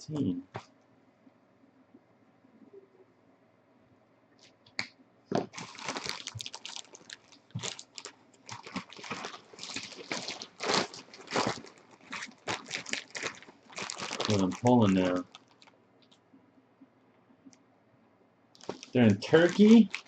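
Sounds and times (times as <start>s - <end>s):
wrappers crinkling and rustling: 5.3s - 16.2s, 18.6s - 20.0s.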